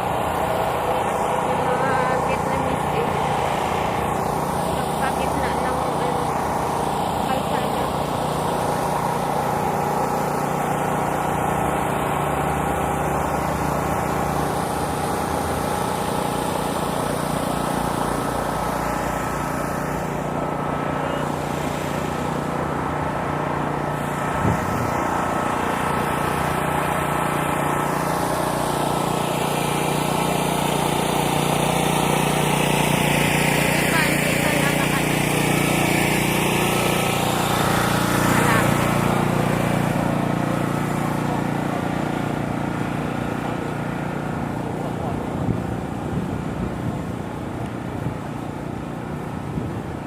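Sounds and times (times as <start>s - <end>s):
traffic noise: 0.0s - 50.0s
crowd murmur: 0.7s - 9.0s.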